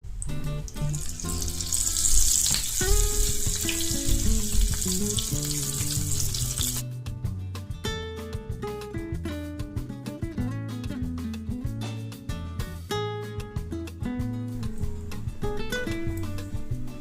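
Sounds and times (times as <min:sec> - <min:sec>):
plucked string background music: 0:00.0 - 0:17.0
prawns frying in hot oil: 0:00.1 - 0:06.8.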